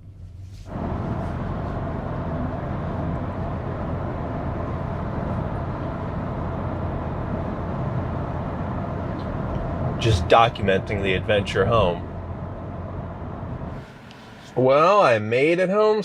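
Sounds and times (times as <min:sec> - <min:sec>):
car road and tyre noise: 0:00.0 - 0:15.5.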